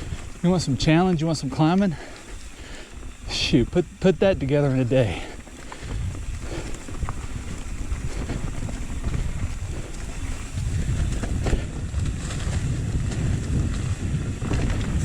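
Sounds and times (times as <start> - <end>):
wind buffeting microphone: 0.0 - 15.0
bike knocks on trail: 4.5 - 15.0.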